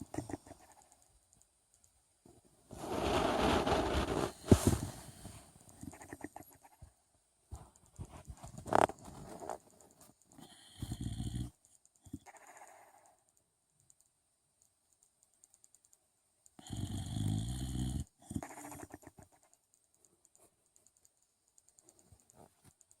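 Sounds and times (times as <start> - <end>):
loud snoring: 10.6 - 11.5, 16.6 - 18.5.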